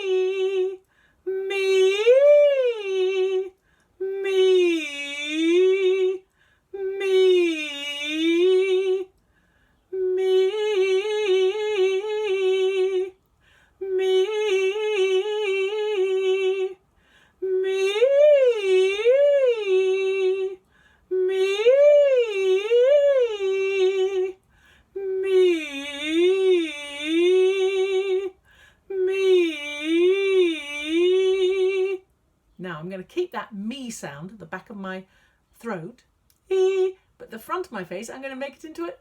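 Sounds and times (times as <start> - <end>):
person humming vocal exercises: 0.0 - 6.2, 6.8 - 9.1, 9.9 - 13.2, 13.8 - 16.8, 17.4 - 24.4, 25.0 - 32.0, 35.7 - 37.4.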